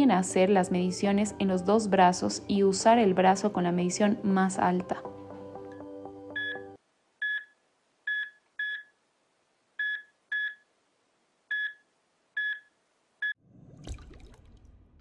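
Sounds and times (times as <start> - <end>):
short electronic beeps: 6.4 - 6.6, 7.2 - 8.9, 9.8 - 10.6, 11.5 - 11.8, 12.4 - 13.4.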